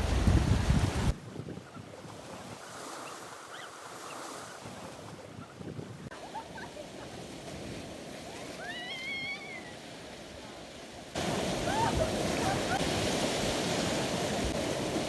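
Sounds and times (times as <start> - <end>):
surf hissing on shore: 0.0 - 1.2, 6.1 - 15.0.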